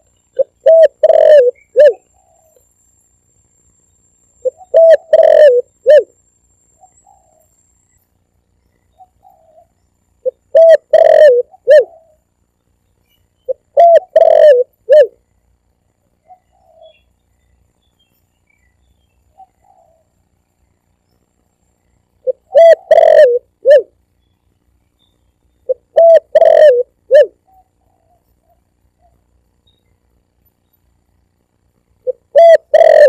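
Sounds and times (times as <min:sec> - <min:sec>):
dove cooing: 0:00.0 - 0:02.6, 0:04.4 - 0:06.1, 0:06.8 - 0:07.5, 0:08.9 - 0:12.2, 0:13.5 - 0:15.2, 0:16.2 - 0:17.0, 0:19.3 - 0:20.1, 0:22.2 - 0:24.0, 0:25.6 - 0:29.2, 0:32.0 - 0:33.0.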